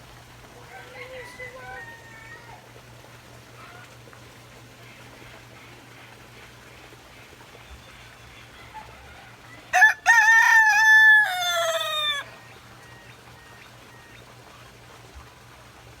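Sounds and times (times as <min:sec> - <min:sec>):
rooster crowing: 0:00.7 - 0:02.6, 0:08.6 - 0:13.5.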